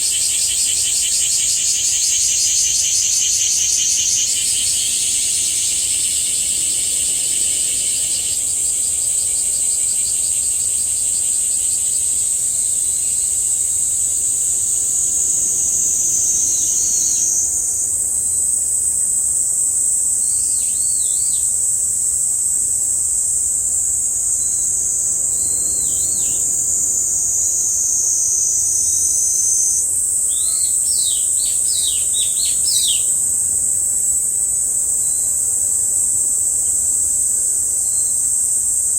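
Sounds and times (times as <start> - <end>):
cicadas chorus: 0.0 - 38.9
lower-pitched cicada: 0.0 - 38.9.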